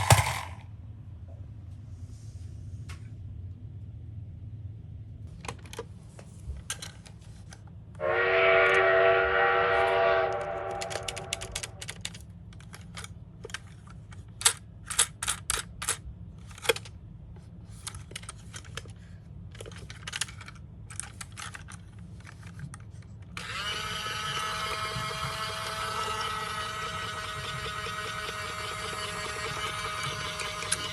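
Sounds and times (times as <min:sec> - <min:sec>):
plastic toy cars clattering: 0:00.0 - 0:00.6, 0:05.3 - 0:07.6, 0:10.8 - 0:17.0, 0:17.6 - 0:23.4, 0:24.0 - 0:30.9.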